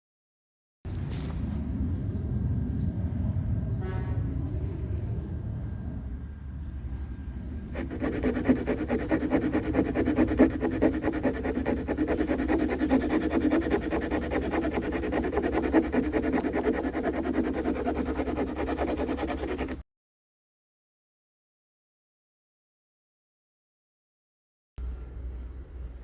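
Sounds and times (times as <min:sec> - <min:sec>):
hand saw cutting wood: 0:07.7 - 0:19.8.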